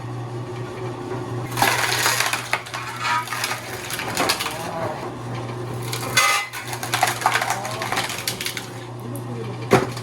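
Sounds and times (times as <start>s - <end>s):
log splitter motor humming: 0.0s - 10.0s
wood crackling and snapping: 5.7s - 8.8s.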